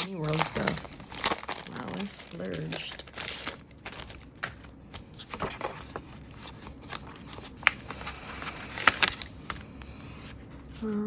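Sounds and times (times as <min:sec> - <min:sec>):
packaging rustling: 0:00.0 - 0:10.7.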